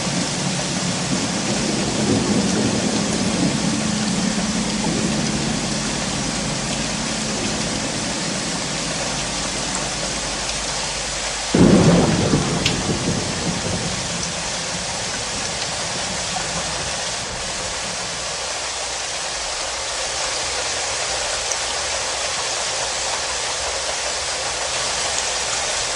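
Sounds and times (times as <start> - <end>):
thunder crack: 0.0 - 18.4
steady rain: 0.0 - 25.9.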